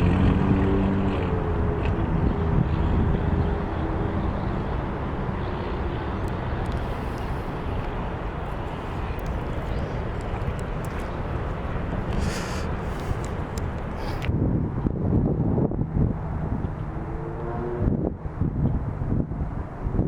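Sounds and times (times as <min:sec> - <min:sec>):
wind buffeting microphone: 0:00.0 - 0:20.0.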